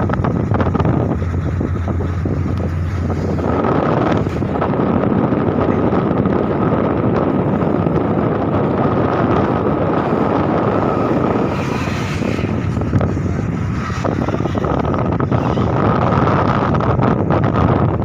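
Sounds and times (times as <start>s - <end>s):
ferry engines droning: 0.0s - 18.0s
wind buffeting microphone: 0.0s - 18.0s
hissing rush: 7.4s - 16.3s.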